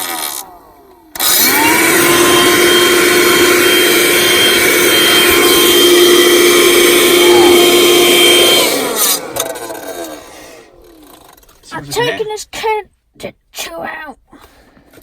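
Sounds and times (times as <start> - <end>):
car vacuum cleaner motor whine: 0.0 - 11.4.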